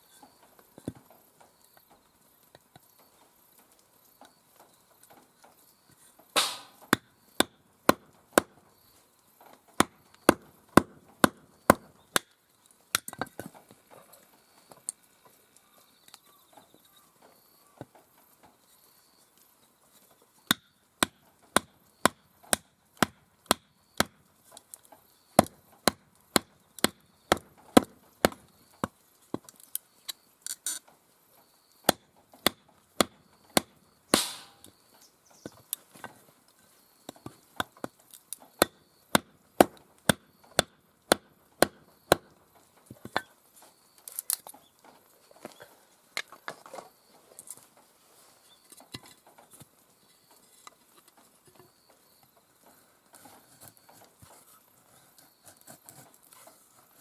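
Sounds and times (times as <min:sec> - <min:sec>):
firewood being chopped: 0:06.4 - 0:08.6, 0:09.5 - 0:13.7, 0:20.5 - 0:29.8, 0:31.8 - 0:34.8, 0:37.1 - 0:43.3
wood splitting crack: 0:06.4 - 0:08.6, 0:09.8 - 0:13.5, 0:20.5 - 0:29.6, 0:31.8 - 0:34.7, 0:37.6 - 0:42.4.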